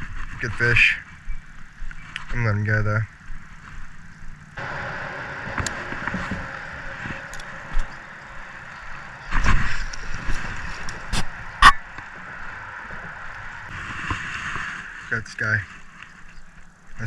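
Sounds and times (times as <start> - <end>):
electric boat motor humming: 3.1 - 13.7.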